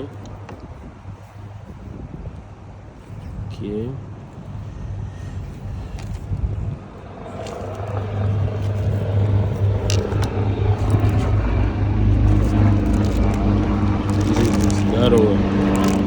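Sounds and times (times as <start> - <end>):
engine running low hum: 0.0 - 16.0.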